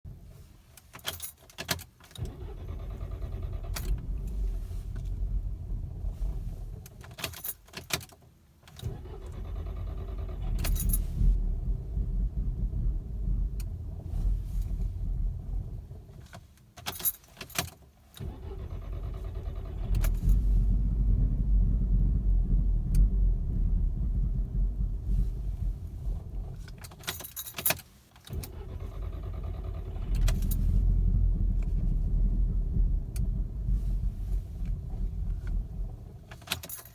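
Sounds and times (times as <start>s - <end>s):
car engine idling roughly: 8.9s - 15.9s, 18.2s - 26.8s, 28.3s - 36.4s.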